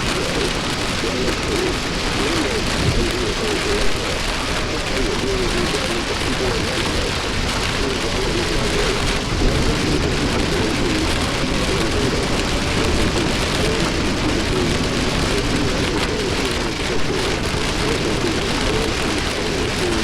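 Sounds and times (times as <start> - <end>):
heavy rain on truck cab: 0.0 - 20.0.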